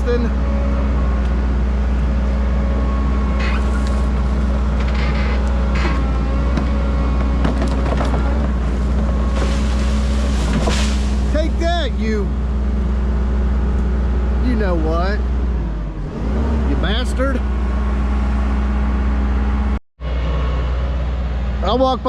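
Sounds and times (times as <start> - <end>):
diesel engine running: 0.0 - 22.0.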